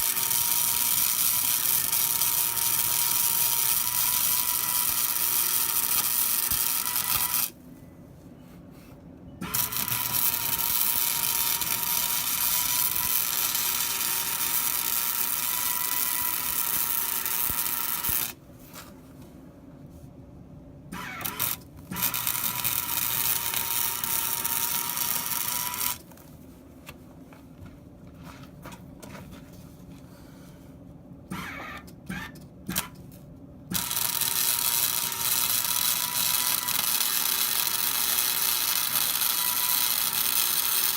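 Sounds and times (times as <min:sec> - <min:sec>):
welding arc crackling: 0:00.0 - 0:07.5, 0:09.5 - 0:18.4, 0:21.3 - 0:26.0, 0:33.7 - 0:40.9.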